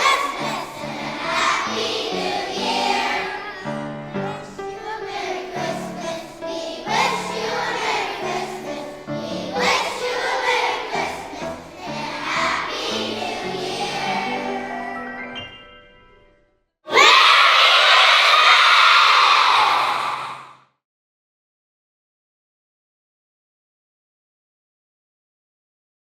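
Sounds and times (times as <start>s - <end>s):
children singing in chorus: 0.0s - 14.9s, 16.9s - 20.5s
instrumental accompaniment: 0.3s - 16.5s.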